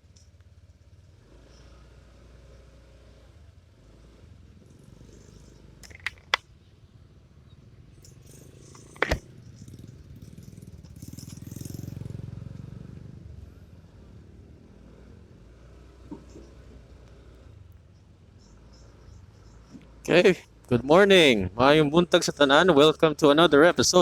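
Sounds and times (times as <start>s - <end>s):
sharp clicks and knocks: 5.8s - 6.5s, 8.0s - 9.7s.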